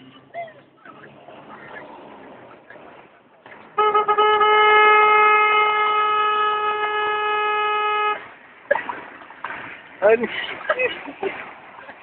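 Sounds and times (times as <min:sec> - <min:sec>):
car horn blast: 0:03.8 - 0:08.3.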